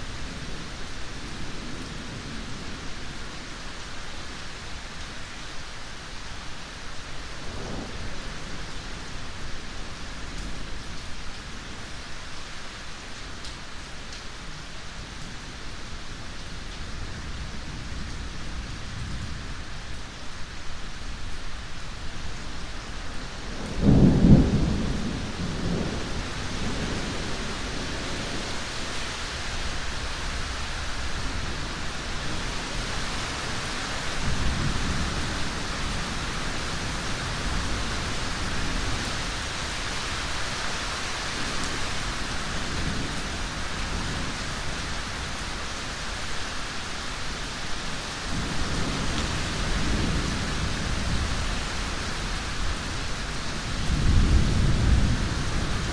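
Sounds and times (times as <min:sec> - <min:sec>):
heavy rain: 0:00.0 - 0:55.9
thunder rumbling: 0:23.4 - 0:28.6, 0:48.3 - 0:55.9.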